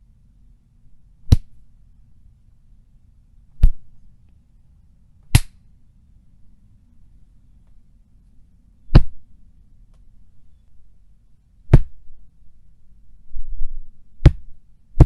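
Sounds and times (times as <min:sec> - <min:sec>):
punch hits with heavy thud: 0:11.7 - 0:11.9.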